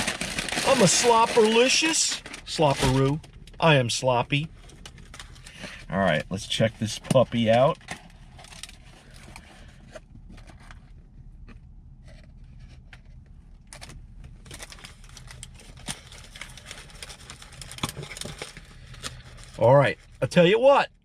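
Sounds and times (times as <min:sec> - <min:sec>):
paper wrapping rustling: 0:00.0 - 0:03.2, 0:12.1 - 0:20.2
low steady hum: 0:00.0 - 0:21.0.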